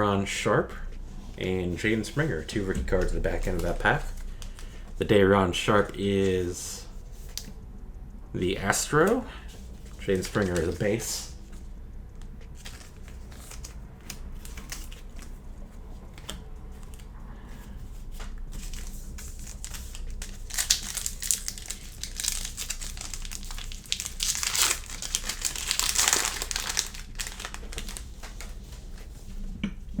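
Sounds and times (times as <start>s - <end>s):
cards ticking when handled: 1.7s - 6.6s, 8.6s - 15.4s, 18.5s - 29.0s
plastic wrapper tearing and crinkling: 9.8s - 11.3s, 12.6s - 15.5s, 18.5s - 29.0s.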